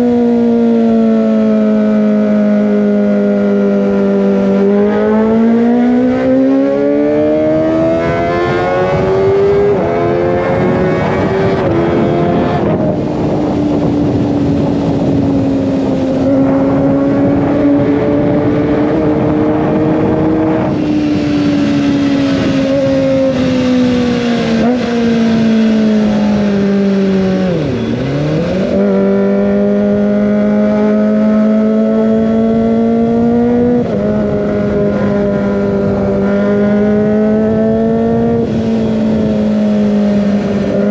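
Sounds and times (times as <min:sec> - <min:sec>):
motorcycle engine revving: 0:00.0 - 0:40.9
road noise: 0:00.0 - 0:40.9
wind noise: 0:00.0 - 0:40.9.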